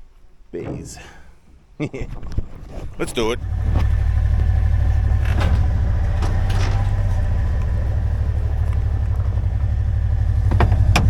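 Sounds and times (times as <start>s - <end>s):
car engine droning: 2.6s - 11.0s.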